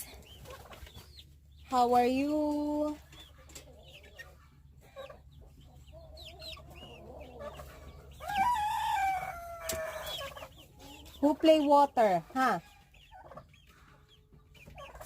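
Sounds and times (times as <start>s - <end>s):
chicks peeping: 0.0s - 15.0s
rooster crowing: 8.2s - 10.1s.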